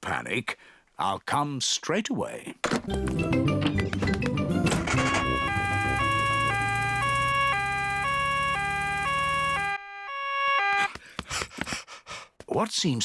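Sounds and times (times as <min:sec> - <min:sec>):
cartoon two-tone siren: 0:04.7 - 0:11.0.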